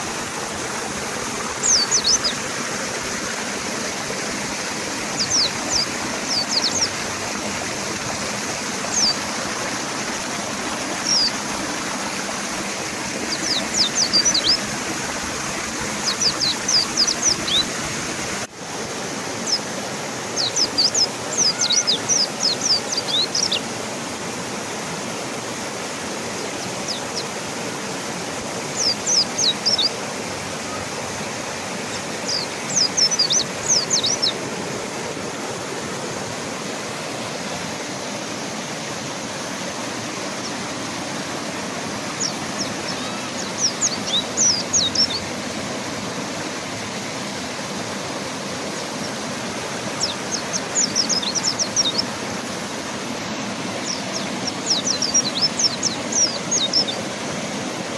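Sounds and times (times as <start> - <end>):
river rushing: 0.0 - 57.9
birds singing high notes: 1.5 - 2.6, 5.1 - 7.1, 8.9 - 9.4, 10.5 - 18.5, 19.4 - 23.7, 28.7 - 34.9, 42.0 - 45.6, 50.0 - 52.2, 53.6 - 57.1.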